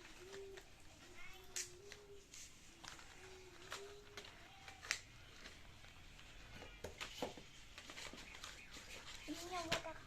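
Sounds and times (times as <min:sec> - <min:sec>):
packaging handling clicks: 0:02.8 - 0:05.7.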